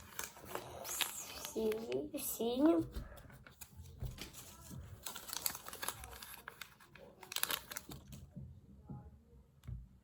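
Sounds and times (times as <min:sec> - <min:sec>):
plastic packet crinkling: 0:04.2 - 0:08.2.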